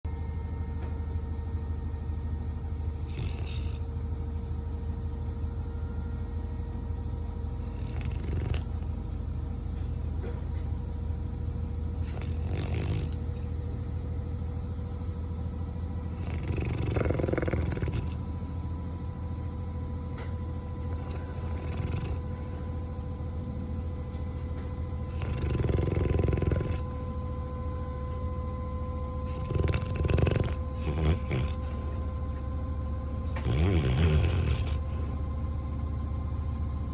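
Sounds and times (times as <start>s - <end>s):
dog snoring: 2.5s - 4.2s, 7.5s - 9.2s, 11.9s - 13.6s, 16.0s - 18.6s, 20.2s - 23.4s, 24.0s - 27.2s, 29.2s - 35.4s
dog outbursts in sleep: 3.0s - 3.8s, 7.6s - 8.9s, 12.0s - 13.2s, 16.1s - 18.2s, 20.8s - 22.6s, 25.1s - 26.9s, 29.2s - 32.0s, 33.2s - 35.2s.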